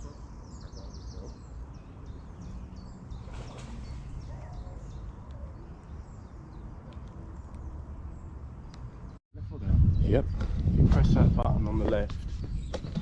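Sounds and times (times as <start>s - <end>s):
small birds chirping: 0.0s - 9.2s.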